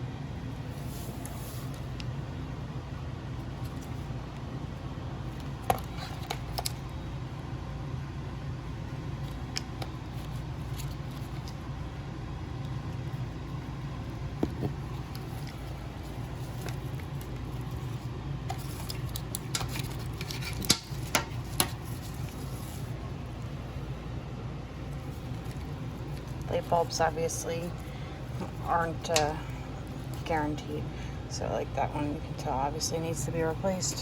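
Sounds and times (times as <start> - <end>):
steady low hum: 0.0 - 34.0.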